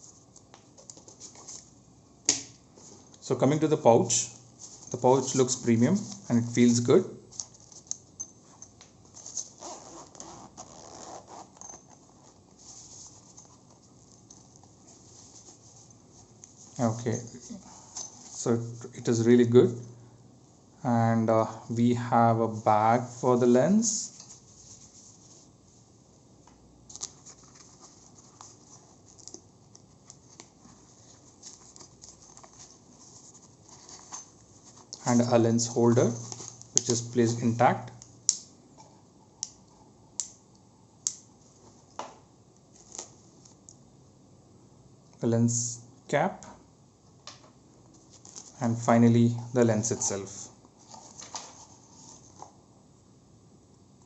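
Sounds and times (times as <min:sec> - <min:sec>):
fabric rustling: 0:07.4 - 0:18.4, 0:24.1 - 0:26.2, 0:26.9 - 0:35.0
zipper pulled open: 0:09.2 - 0:12.4
packaging rustling: 0:26.9 - 0:35.0, 0:36.0 - 0:37.0.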